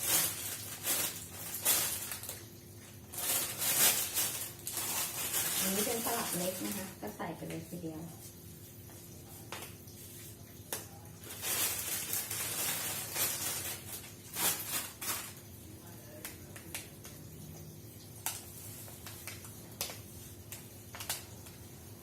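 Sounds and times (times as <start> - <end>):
food packaging rustling: 0.0 - 7.7, 9.5 - 15.5, 18.3 - 21.7.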